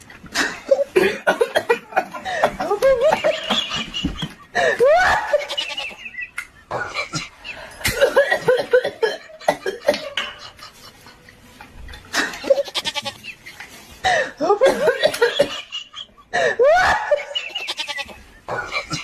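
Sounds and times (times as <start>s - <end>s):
person giggling: 0.3s - 5.9s, 6.6s - 11.2s, 14.1s - 19.0s.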